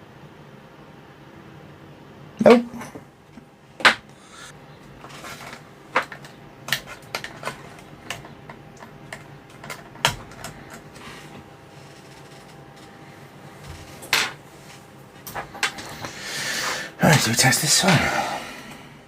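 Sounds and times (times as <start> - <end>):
faint steady hum: 0.0 - 19.0
tools and small parts clicking: 5.3 - 10.9.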